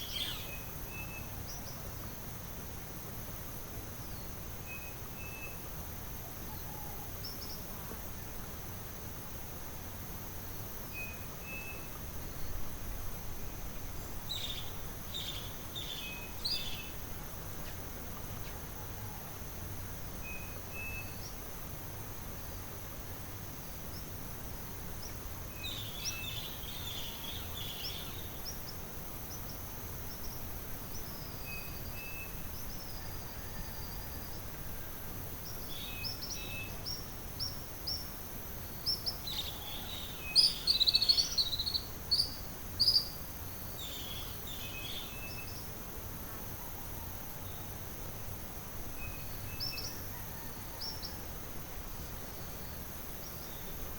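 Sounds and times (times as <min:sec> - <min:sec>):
high insect drone: 0:00.0 - 0:53.9
bird chirping: 0:38.8 - 0:45.7.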